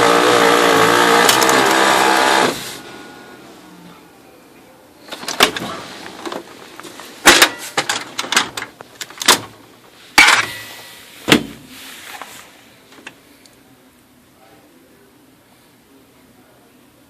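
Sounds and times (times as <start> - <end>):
printer clunking and clattering: 5.1 - 10.7.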